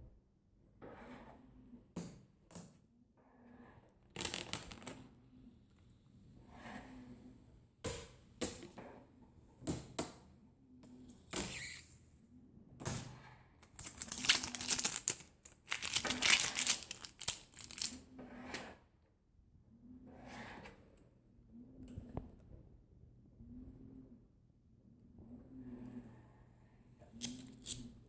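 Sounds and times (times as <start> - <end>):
plastic film crinkling and tearing: 13.7 - 18.0.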